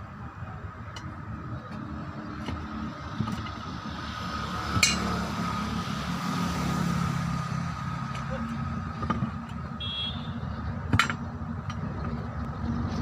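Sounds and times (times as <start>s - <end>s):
metallic clinks and taps: 4.8s - 5.1s.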